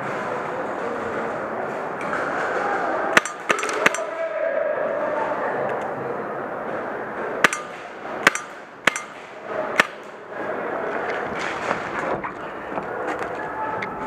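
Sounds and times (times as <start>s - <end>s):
steady background noise: 0.0s - 14.0s
airsoft gun shots: 3.2s - 4.1s, 7.4s - 10.2s.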